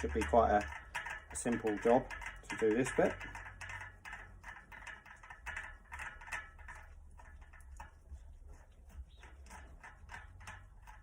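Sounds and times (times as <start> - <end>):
metallic clicking of bearing cone: 0.0 - 11.0.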